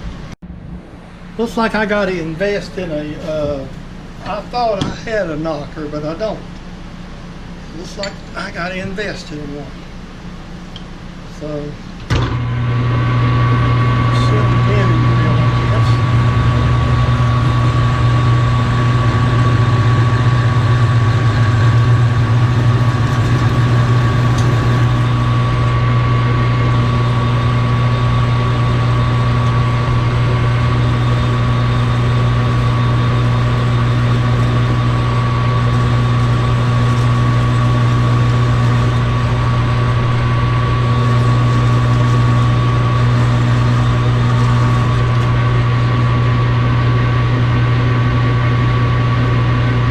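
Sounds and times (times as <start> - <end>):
metal lathe running: 12.1 - 49.9.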